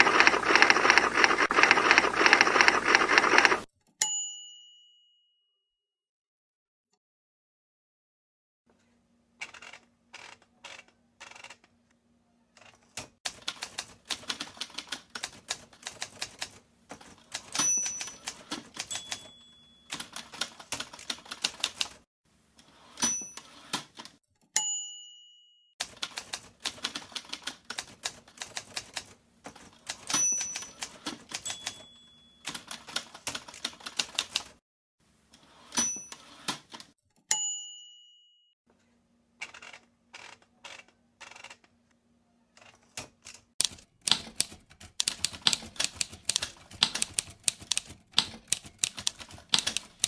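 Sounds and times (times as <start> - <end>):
typewriter bell ding: 17.5 - 20.3, 23.0 - 23.6, 24.6 - 25.7, 30.0 - 32.9, 35.8 - 36.4, 37.3 - 38.5.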